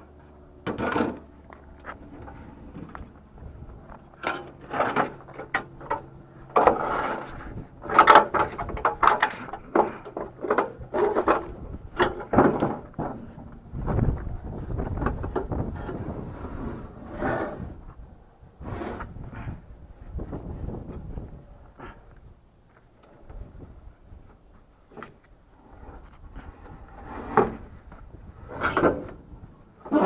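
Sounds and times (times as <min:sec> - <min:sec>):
heavy scrap metal clunking: 0:04.2 - 0:13.5.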